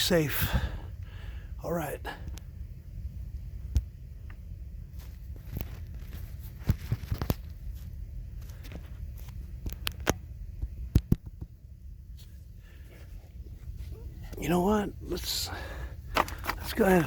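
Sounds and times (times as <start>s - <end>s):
knocks clicks and scrapes: 16.1s - 17.0s.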